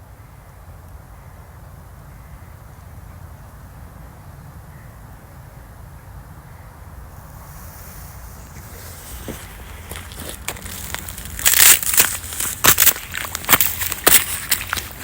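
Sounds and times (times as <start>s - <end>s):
footsteps crunching on frozen ground: 7.2s - 15.0s.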